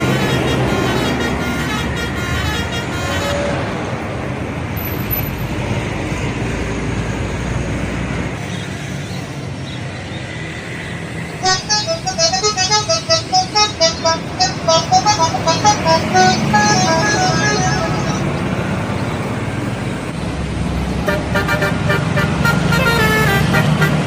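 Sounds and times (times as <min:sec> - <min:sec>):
multi-tone bus horn tune: 0:00.0 - 0:04.0, 0:11.4 - 0:19.1, 0:21.0 - 0:24.0
heavy bus engine rumble: 0:00.0 - 0:24.0
traffic noise: 0:00.0 - 0:24.0.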